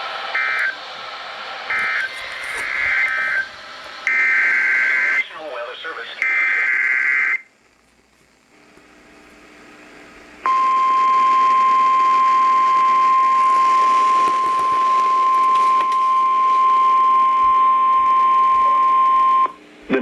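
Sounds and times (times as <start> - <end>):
faint radio hiss: 0.0 - 10.5
steady single-pitch alarm tone: 1.7 - 5.2, 10.5 - 19.5.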